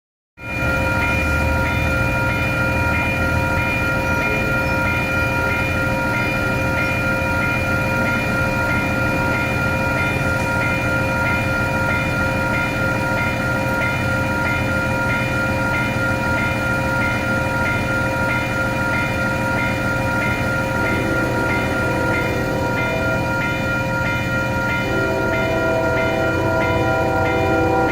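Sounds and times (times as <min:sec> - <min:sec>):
multi-chime air horn chord: 0:20.2 - 0:27.9.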